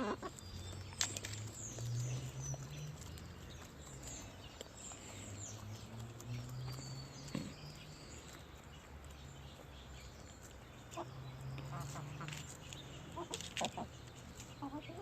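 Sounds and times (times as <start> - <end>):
chickens clucking softly: 0.0 - 0.4, 10.4 - 15.0.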